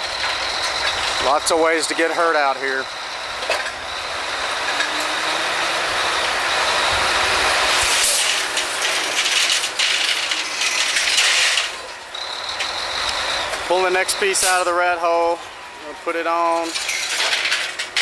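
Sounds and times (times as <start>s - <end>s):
drilling rig machinery hissing: 0.0s - 18.0s
metal clicks and clanks: 8.0s - 11.8s, 16.6s - 18.0s.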